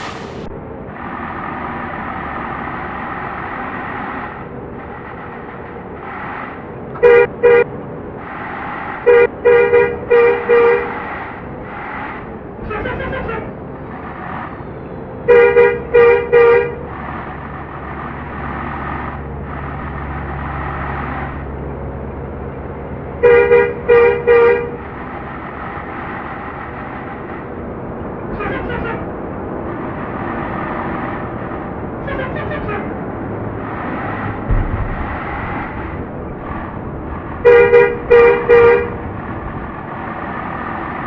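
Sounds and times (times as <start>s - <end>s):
bus horn three-note bursts: 0.0s - 0.5s, 7.0s - 7.7s, 9.0s - 11.0s, 12.7s - 13.6s, 15.2s - 16.9s, 23.2s - 25.0s, 28.4s - 29.1s, 32.0s - 33.0s, 37.4s - 39.1s
traffic rumble: 0.0s - 41.0s.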